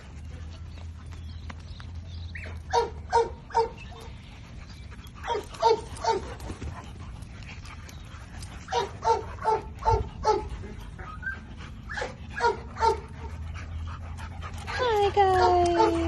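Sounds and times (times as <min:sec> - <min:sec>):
dog barking: 0:02.7 - 0:03.8, 0:08.7 - 0:10.5, 0:11.9 - 0:13.0.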